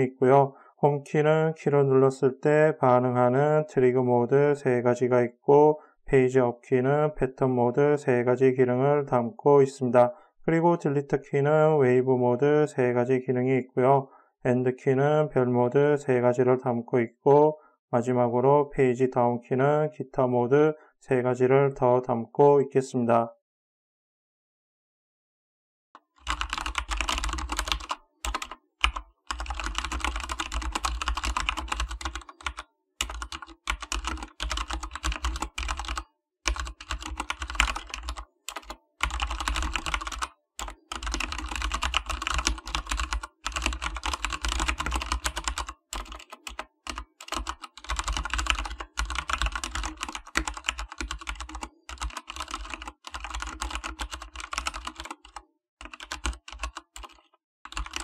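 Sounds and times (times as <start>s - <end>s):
fast typing on mechanical keyboard: 26.2s - 58.0s.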